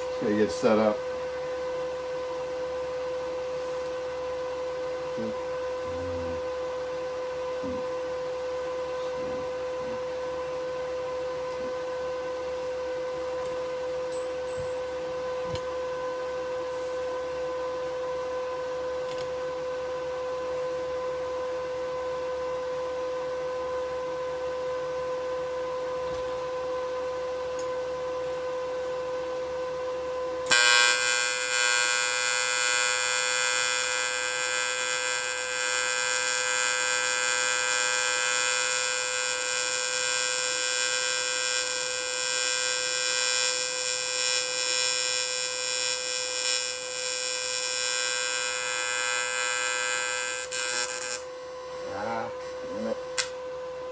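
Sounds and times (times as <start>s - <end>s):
loud buzzing welding arc: 0.0s - 1.2s, 30.5s - 53.3s
welder humming: 0.0s - 6.6s, 30.4s - 53.4s.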